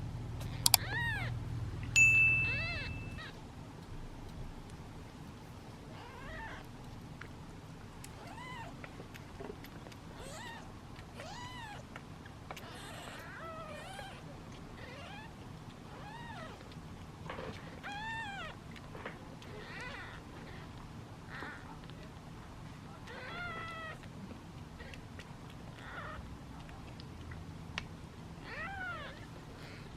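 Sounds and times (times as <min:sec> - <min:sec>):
kittens meowing: 0:00.4 - 0:01.4, 0:02.3 - 0:03.4, 0:05.9 - 0:06.7, 0:08.2 - 0:08.8, 0:10.2 - 0:11.9, 0:12.6 - 0:16.7, 0:17.8 - 0:18.6, 0:19.5 - 0:20.7, 0:23.0 - 0:24.1, 0:25.7 - 0:26.2, 0:28.4 - 0:29.9.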